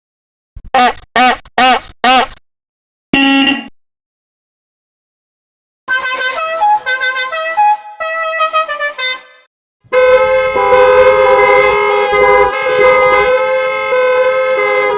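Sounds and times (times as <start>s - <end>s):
sustained multi-tone horn blast: 5.9s - 14.9s
short horn toots: 6.0s - 14.9s.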